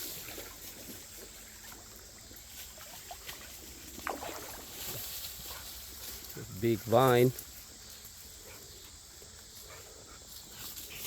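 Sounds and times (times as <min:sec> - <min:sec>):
low water noise: 0:00.0 - 0:07.8.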